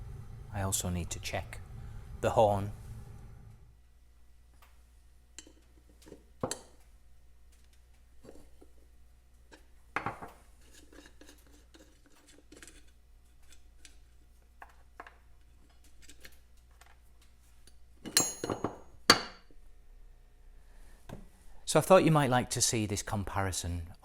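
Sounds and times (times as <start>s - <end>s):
metallic clinks ringing: 18.2s - 18.7s.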